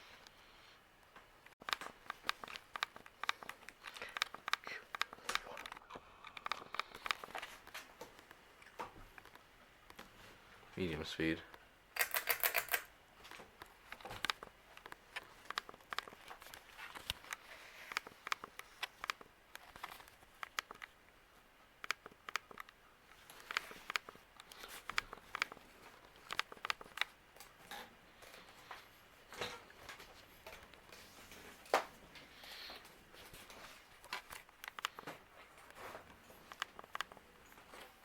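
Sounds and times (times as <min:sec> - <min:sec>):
ceiling fan running quietly: 0:00.0 - 0:38.0
light clicks and crackles: 0:01.0 - 0:10.2, 0:21.8 - 0:38.0
fan pull-chain clicks: 0:12.0 - 0:12.9.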